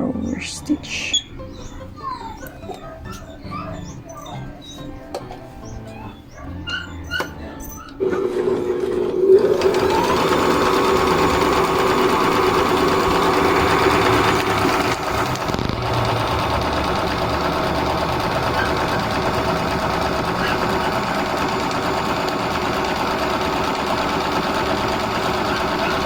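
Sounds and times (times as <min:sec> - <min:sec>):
sewing machine running: 0:08.0 - 0:26.0.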